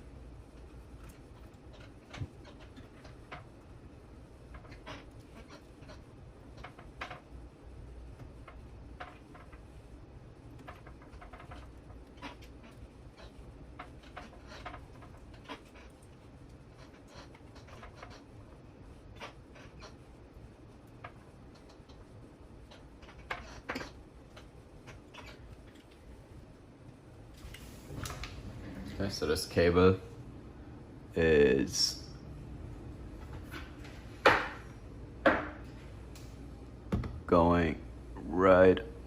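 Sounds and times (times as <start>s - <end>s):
low steady hum: 0.0s - 39.0s.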